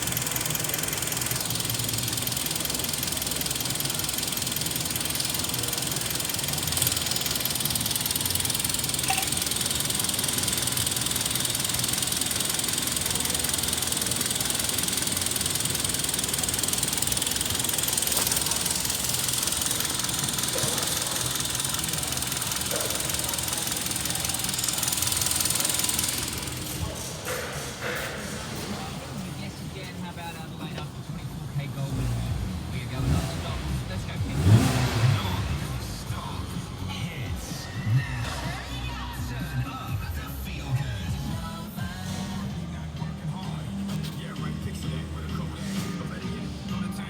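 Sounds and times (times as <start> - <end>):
car engine idling: 0.0 - 47.0.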